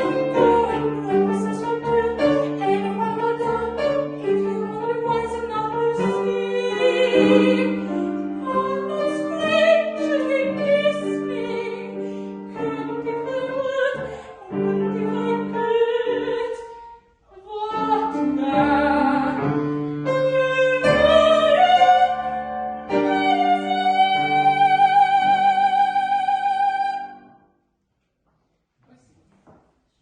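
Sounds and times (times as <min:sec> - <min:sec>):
woman singing operatic style: 0:00.0 - 0:27.3
piano accompaniment: 0:00.0 - 0:27.4.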